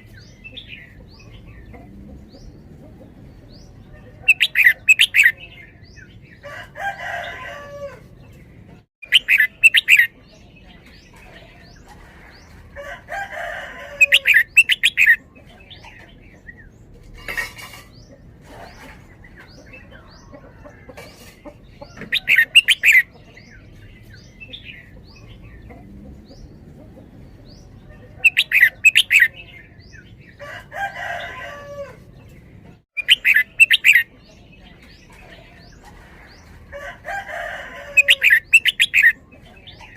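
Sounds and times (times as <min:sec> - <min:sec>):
bird singing bright phrases: 0:00.0 - 0:17.0, 0:18.0 - 0:39.9.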